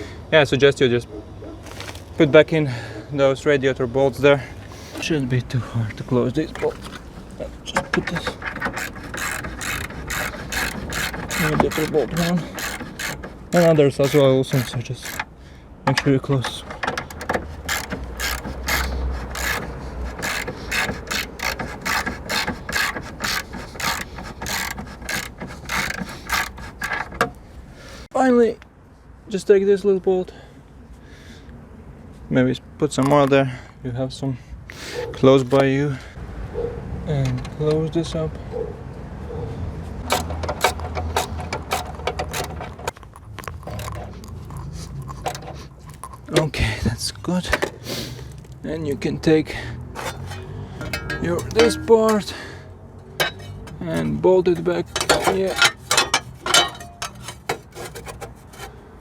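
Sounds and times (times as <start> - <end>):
ratchet wrench clicking: 7.9 - 15.4, 17.0 - 27.3, 40.0 - 46.3
metal clinks: 50.1 - 52.5, 53.1 - 53.9, 54.8 - 57.5.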